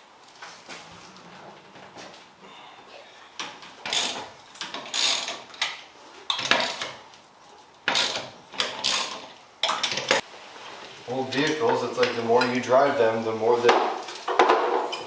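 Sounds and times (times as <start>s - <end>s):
ratchet wrench clicking: 3.9s - 5.7s, 7.9s - 9.3s.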